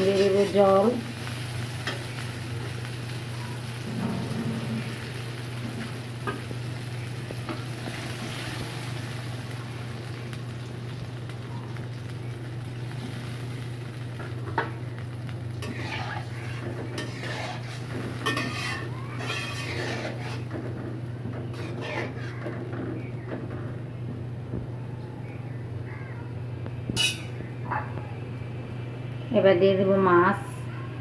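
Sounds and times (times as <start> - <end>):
food sizzling in oil: 0.0 - 22.4, 27.0 - 27.4
steady low hum: 0.0 - 31.0
spatula scraping pan: 15.6 - 20.7, 21.4 - 22.6.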